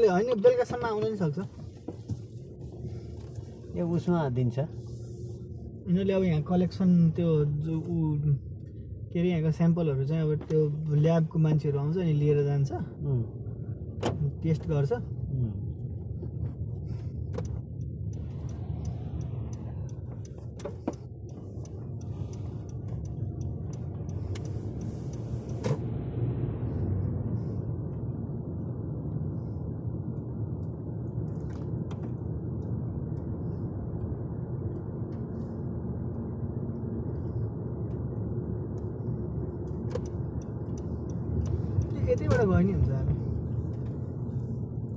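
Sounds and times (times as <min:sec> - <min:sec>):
car road rumble: 0:00.0 - 0:44.9.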